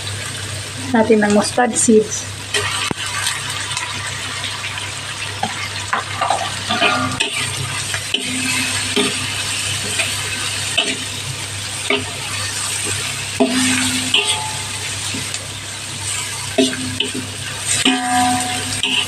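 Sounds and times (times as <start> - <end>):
food sizzling in hot oil: 0.0 - 19.0
utensil tapping pan: 5.9 - 11.2, 11.9 - 15.4, 16.6 - 19.0
spatula stirring: 11.9 - 15.4, 16.2 - 19.0.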